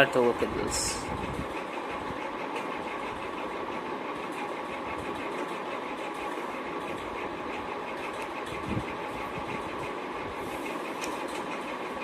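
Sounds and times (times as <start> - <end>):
machine running with pulsing: 0.0 - 12.0.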